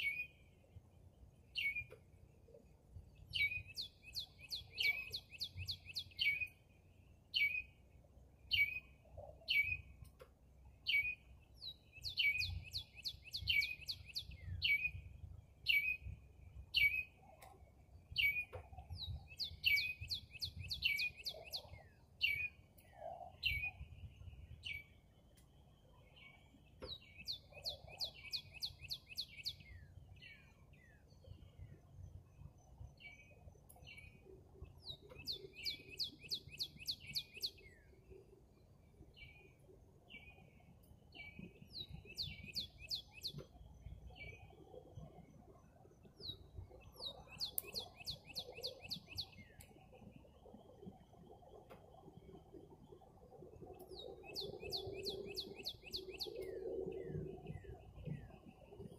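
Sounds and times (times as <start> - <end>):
small bird chirping: 3.2 - 6.6, 10.8 - 16.1, 18.2 - 25.0, 26.1 - 31.1, 32.8 - 38.0, 40.1 - 45.2, 46.0 - 50.2, 53.6 - 58.9.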